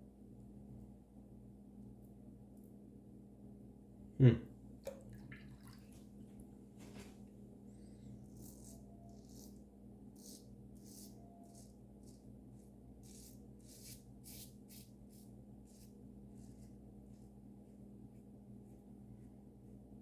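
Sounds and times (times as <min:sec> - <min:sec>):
razor scraping stubble: 0:08.2 - 0:09.6, 0:10.2 - 0:16.7.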